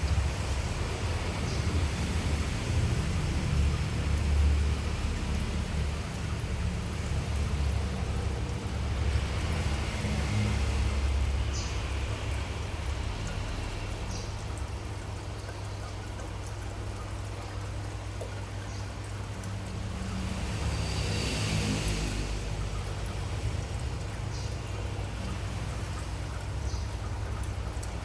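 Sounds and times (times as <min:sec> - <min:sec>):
aquarium water trickling: 0:00.0 - 0:28.0
filter and pump hum: 0:00.0 - 0:28.0.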